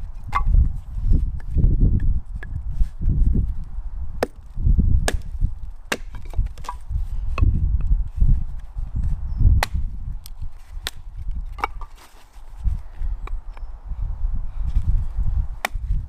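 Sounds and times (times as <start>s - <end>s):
wood cracking and knocking: 0.2s - 0.7s, 4.2s - 6.9s, 9.6s - 12.2s.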